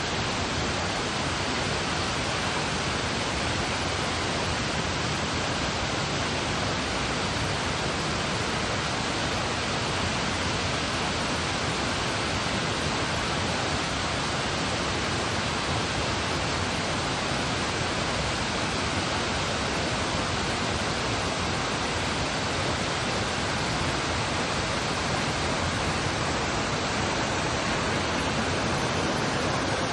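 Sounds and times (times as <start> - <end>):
waterfall rushing: 0.0 - 29.9.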